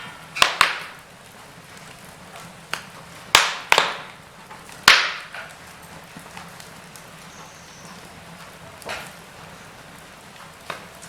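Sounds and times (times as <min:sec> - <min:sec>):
loud pop of fire: 0:00.0 - 0:01.0, 0:02.8 - 0:04.2, 0:04.8 - 0:05.5
wood fire crackling: 0:00.0 - 0:11.0.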